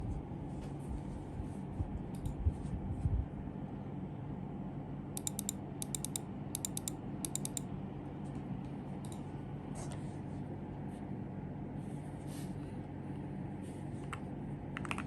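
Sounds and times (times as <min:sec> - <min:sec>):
steady low hum: 0:00.0 - 0:15.0
typing on mechanical keyboard: 0:05.2 - 0:07.6.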